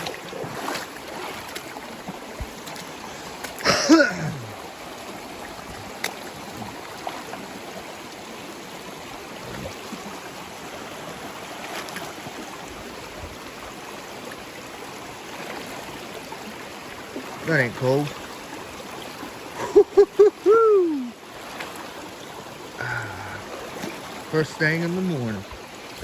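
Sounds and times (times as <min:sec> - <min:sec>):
stream flowing: 0:00.0 - 0:26.0
man yelling: 0:20.1 - 0:21.2.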